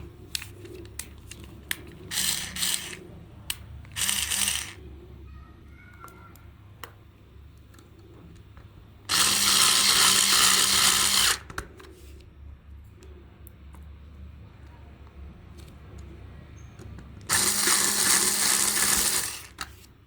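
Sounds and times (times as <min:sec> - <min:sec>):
small power tool running: 0:02.1 - 0:03.0, 0:04.0 - 0:04.8, 0:09.1 - 0:11.4, 0:17.3 - 0:19.6.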